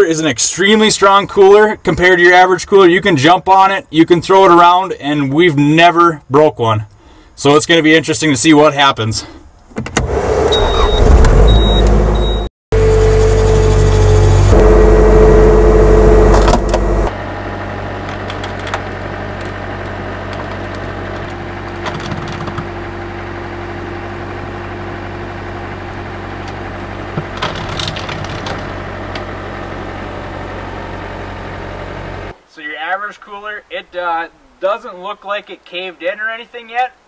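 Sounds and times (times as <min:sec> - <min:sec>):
skid steer engine running: 0:10.6 - 0:32.3
plastic cooler cracking: 0:27.1 - 0:28.7.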